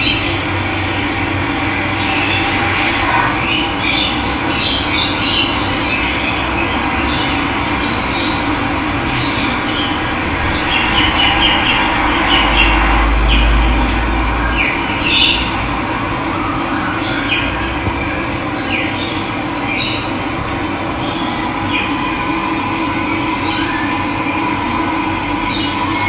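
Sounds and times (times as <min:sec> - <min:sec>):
low rumble: 0:05.7 - 0:16.2, 0:17.6 - 0:24.6
birds chirping: 0:17.0 - 0:24.2.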